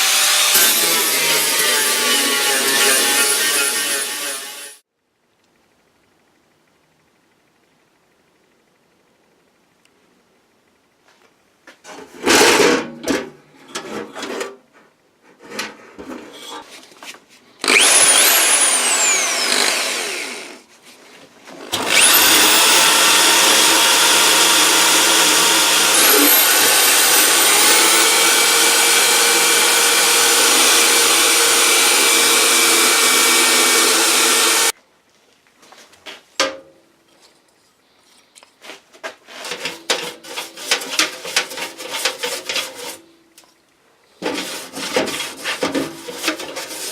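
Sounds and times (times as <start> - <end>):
power tool whining: 0.0 - 4.8, 17.6 - 20.6, 21.7 - 34.7.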